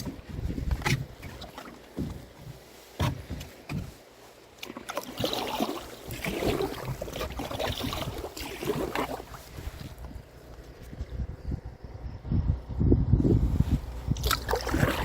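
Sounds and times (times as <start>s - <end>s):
paddle splashing in water: 0.0s - 10.3s, 14.1s - 15.0s
sharp knocks on canoe: 2.0s - 4.0s.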